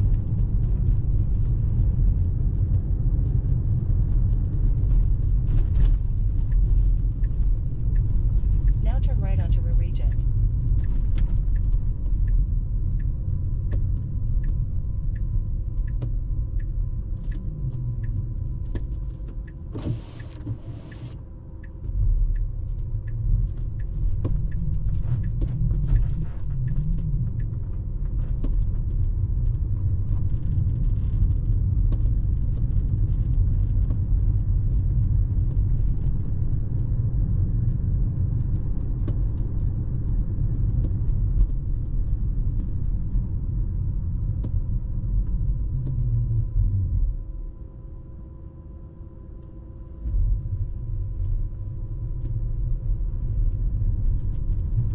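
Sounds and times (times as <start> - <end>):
turn signal ticking: 5.0 - 32.8.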